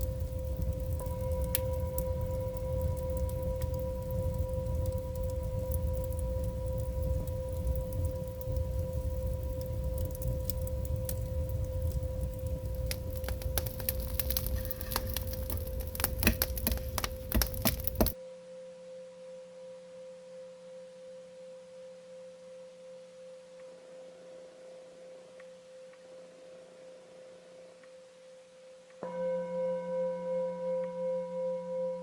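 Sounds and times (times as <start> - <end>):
firewood crackling and popping: 0.0 - 18.2.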